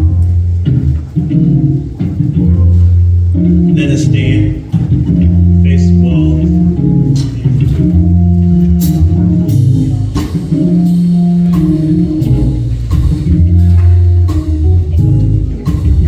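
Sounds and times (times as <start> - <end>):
band playing instrumental music: 0.0 - 16.0
sustained bass line: 0.0 - 16.0
drum hits: 8.8 - 16.0.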